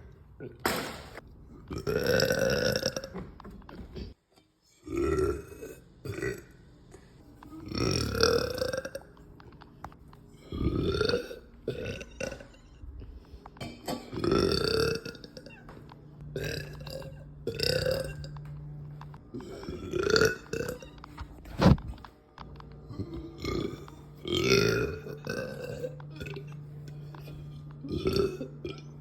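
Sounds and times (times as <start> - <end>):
woman belching: 1.7 - 3.2, 4.8 - 6.5, 7.6 - 9.1, 10.5 - 12.7, 13.6 - 18.4, 19.4 - 21.0, 23.0 - 26.6, 27.8 - 29.0.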